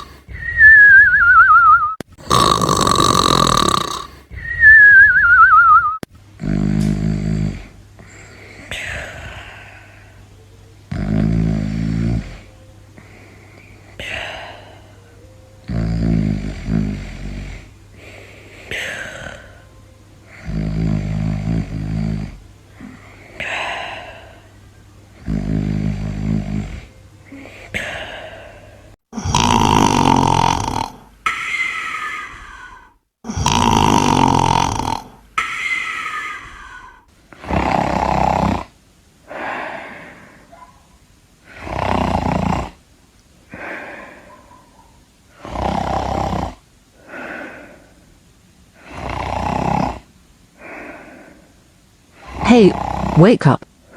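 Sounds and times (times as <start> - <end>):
person snoring: 0.0 - 1.0, 2.2 - 4.4, 6.4 - 10.0, 10.9 - 13.2, 15.7 - 19.6, 20.3 - 24.5, 25.2 - 38.7, 41.5 - 42.8, 45.4 - 47.9, 48.8 - 51.4, 52.2 - 53.6
whistling breath out: 0.0 - 2.0, 4.3 - 6.0.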